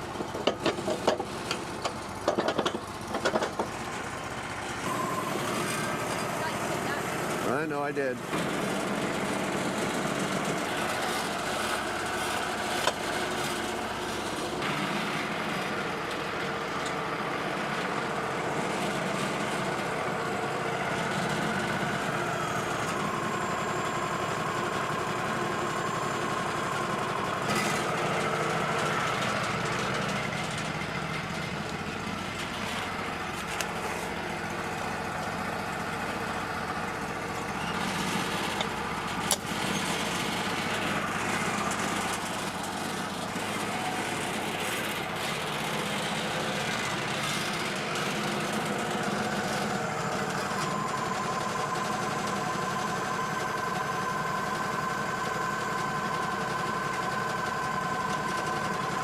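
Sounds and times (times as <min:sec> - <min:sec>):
small engine running: 0:00.0 - 0:59.0.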